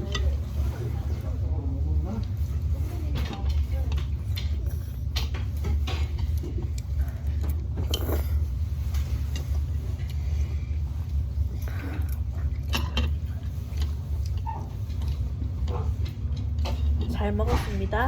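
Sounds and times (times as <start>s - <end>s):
steady low hum: 0.0s - 18.0s
utensils clinking on dish: 11.7s - 17.9s.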